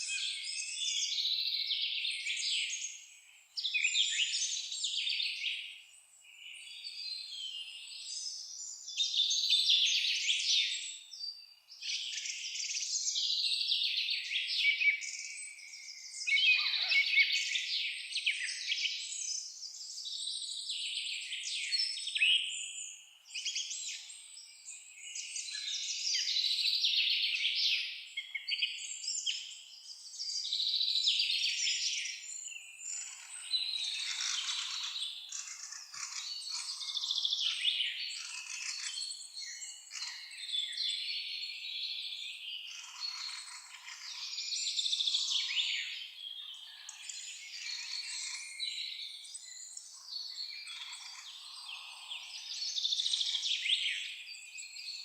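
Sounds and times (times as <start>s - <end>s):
songbirds chirping and trilling: 0.0s - 55.0s.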